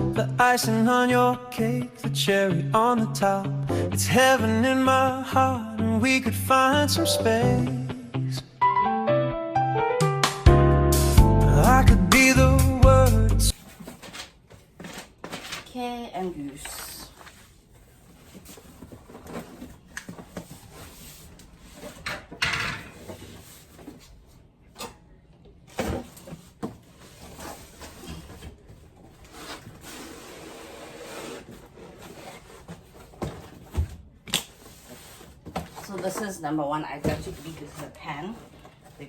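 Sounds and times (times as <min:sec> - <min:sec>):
cardboard rustling and scraping: 0:13.5 - 0:15.7, 0:16.4 - 0:25.0, 0:25.7 - 0:39.0.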